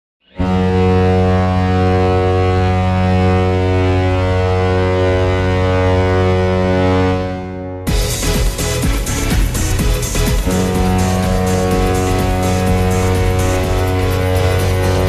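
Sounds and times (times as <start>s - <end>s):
deep goal horn blast: 0.3s - 15.0s.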